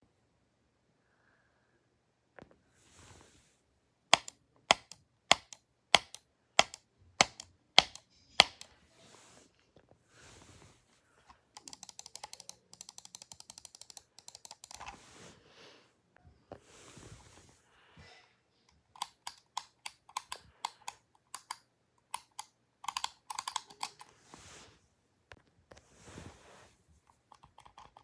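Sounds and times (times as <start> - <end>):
fast light typing clicks: 4.1 - 8.7, 11.6 - 14.9, 19.0 - 24.0.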